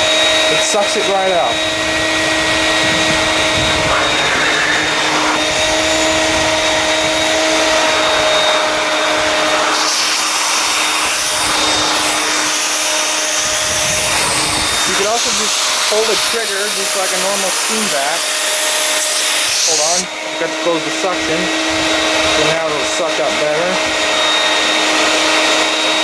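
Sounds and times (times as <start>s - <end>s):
vacuum motor whining: 0.0s - 26.0s.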